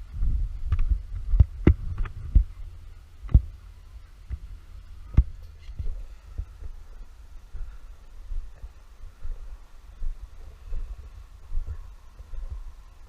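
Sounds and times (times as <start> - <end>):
low thumps: 0.0 - 7.0
low rumble: 0.0 - 13.0.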